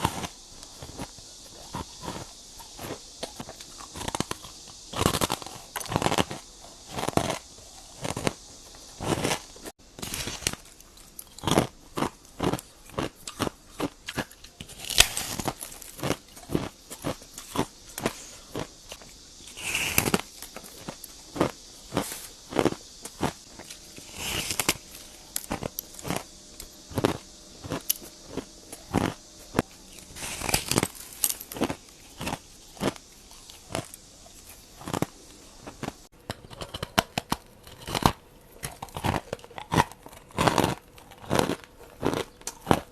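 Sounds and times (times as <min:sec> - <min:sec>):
person crunching ice: 0:14.8 - 0:16.7, 0:30.1 - 0:33.0.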